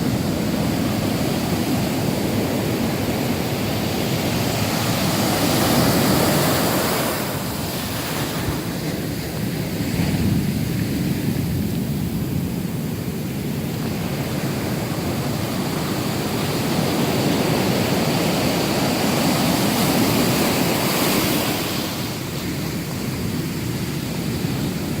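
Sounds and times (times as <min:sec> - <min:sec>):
surf crashing ashore: 0:00.0 - 0:25.0.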